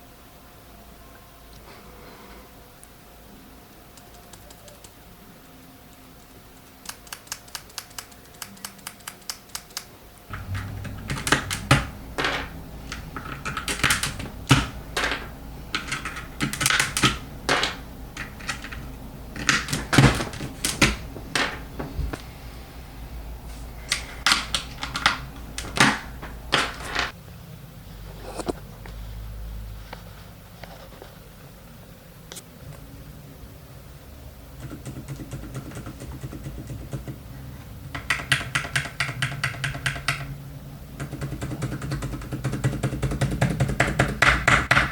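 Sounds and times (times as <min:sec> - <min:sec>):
low steady hum: 0:00.0 - 0:38.0
muted mechanical keyboard typing: 0:03.9 - 0:05.0, 0:06.5 - 0:21.1, 0:34.6 - 0:37.3, 0:37.9 - 0:40.4, 0:41.0 - 0:44.9.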